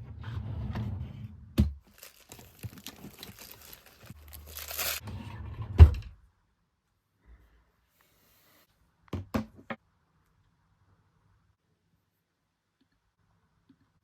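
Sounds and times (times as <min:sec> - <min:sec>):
packaging crinkling: 0:01.9 - 0:05.0.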